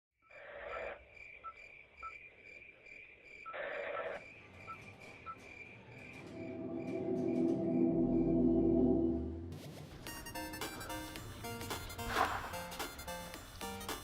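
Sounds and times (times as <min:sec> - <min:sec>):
crickets chirping: 0:00.2 - 0:08.6.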